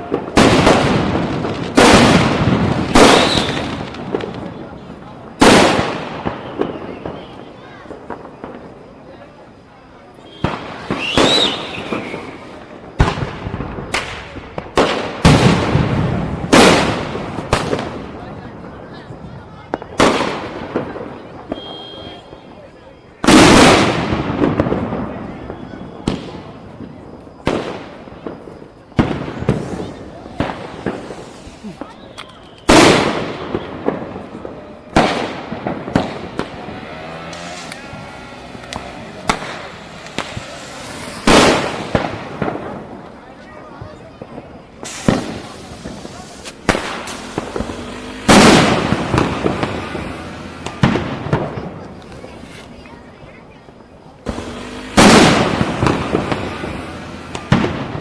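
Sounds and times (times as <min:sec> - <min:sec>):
firecrackers bursting: 0:00.0 - 0:58.0
sharp cracks and pops: 0:37.2 - 0:42.6, 0:44.8 - 0:49.8.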